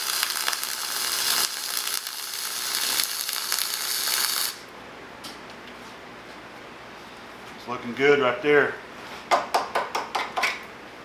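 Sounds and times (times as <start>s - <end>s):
welding arc crackling: 0.0s - 4.7s.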